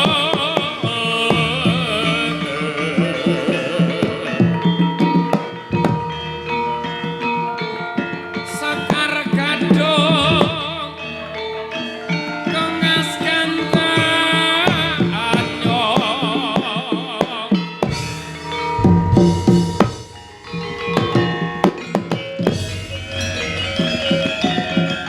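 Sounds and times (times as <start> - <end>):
gamelan ensemble playing: 0.0 - 25.0
hand drum strokes: 0.0 - 25.0
metallophone tones: 0.0 - 25.0
wavering melodic line: 18.0 - 25.0.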